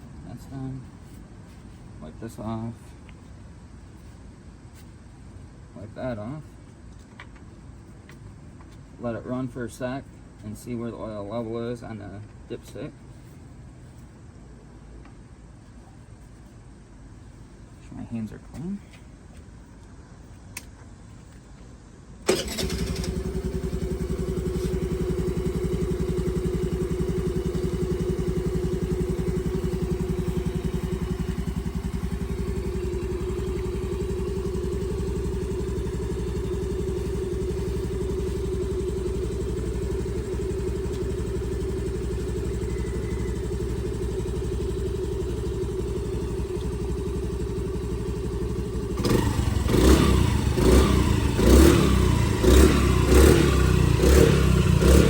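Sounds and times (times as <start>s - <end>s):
scooter engine starting and idling: 22.2s - 55.0s.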